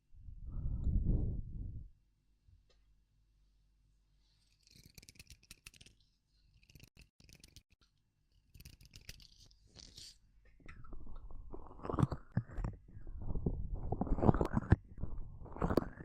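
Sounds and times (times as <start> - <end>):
scratching and rubbing on microphone: 8.6 - 16.0.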